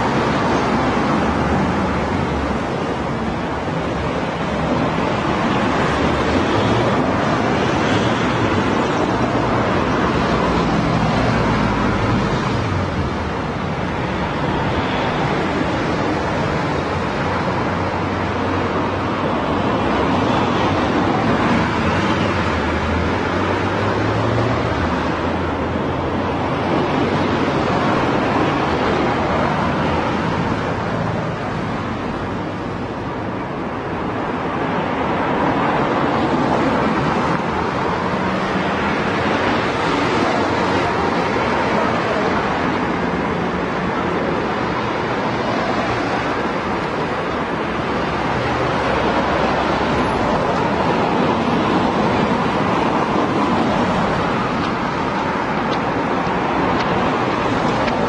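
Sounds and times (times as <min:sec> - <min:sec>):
passing cars: 0:00.0 - 0:58.0.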